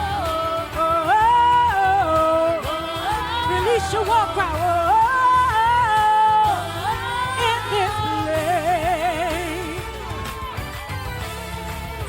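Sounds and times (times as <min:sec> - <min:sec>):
person singing wordless notes: 0:00.0 - 0:10.6.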